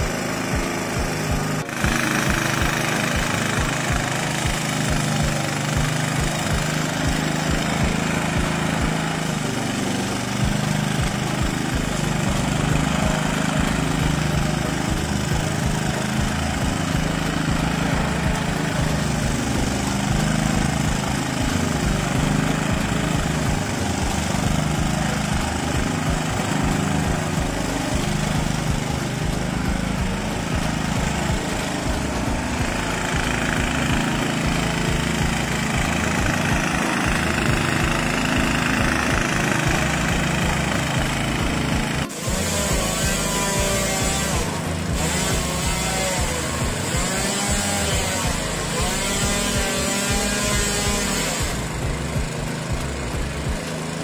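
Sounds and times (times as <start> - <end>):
petrol lawnmower running: 0.0 - 54.0.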